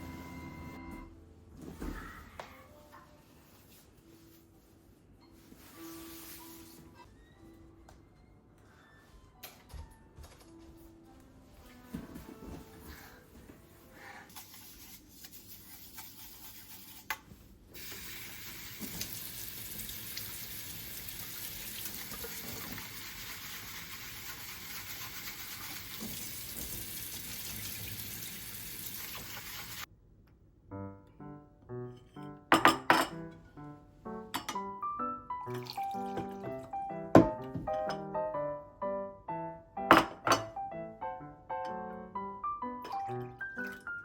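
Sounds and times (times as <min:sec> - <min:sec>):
melodic background music: 0:00.0 - 0:01.5, 0:30.8 - 0:44.0.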